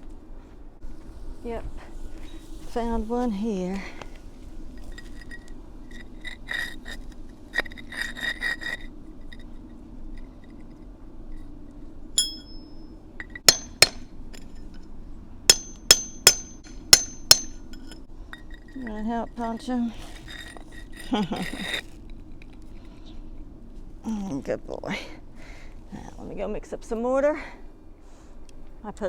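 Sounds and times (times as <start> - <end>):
tools scraping brick paver: 2.2 - 9.6, 15.5 - 23.0
sharp ringing knocks: 12.2 - 14.1, 15.5 - 18.4.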